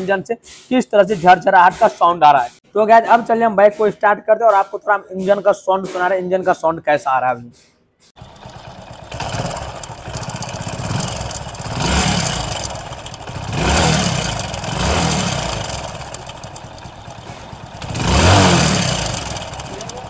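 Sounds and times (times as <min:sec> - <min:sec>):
motorcycle engine revving: 0:08.2 - 0:20.0
timing chain rattling: 0:08.2 - 0:20.0.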